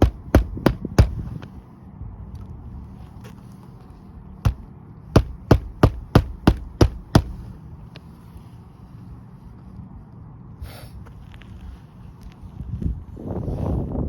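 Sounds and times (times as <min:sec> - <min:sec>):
hammer striking nail: 0:00.0 - 0:01.5, 0:04.5 - 0:07.5.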